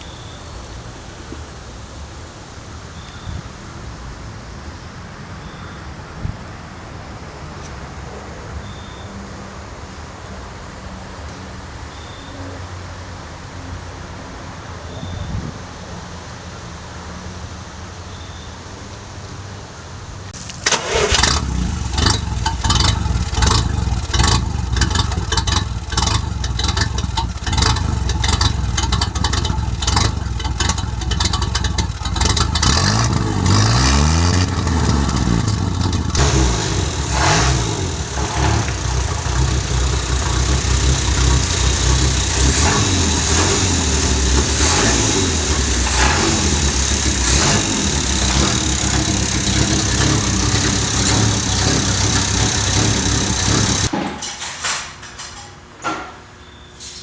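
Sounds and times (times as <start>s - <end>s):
car engine running with sharp pops: 20.4s - 56.2s.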